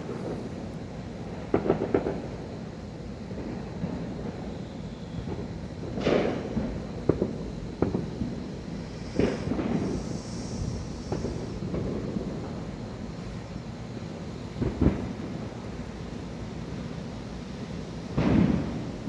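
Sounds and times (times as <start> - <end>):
distant fireworks booming: 0.0 - 2.7, 3.3 - 19.0
sharp firework bangs: 5.1 - 13.5, 14.5 - 15.6, 18.1 - 19.0
steady low rumble: 5.2 - 16.9.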